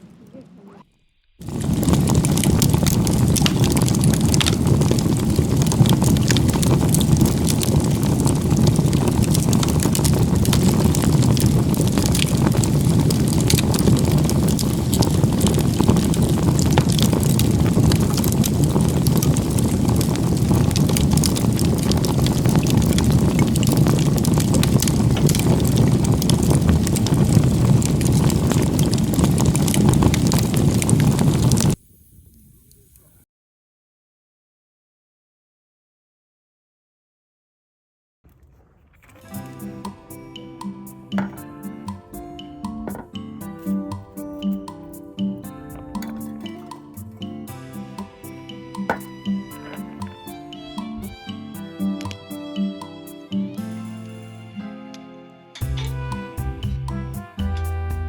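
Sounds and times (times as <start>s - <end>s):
fire crackling and popping: 0.0s - 33.2s, 38.3s - 54.4s, 55.6s - 58.0s
wood fire burning: 1.3s - 33.1s, 38.3s - 54.4s, 55.6s - 58.0s.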